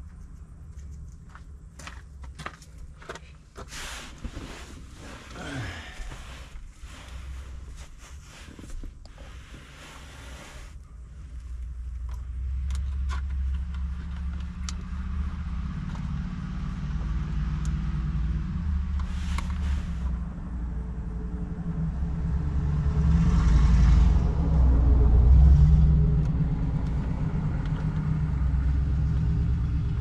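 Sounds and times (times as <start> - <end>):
vehicle engine rumbling: 0.0 - 30.0.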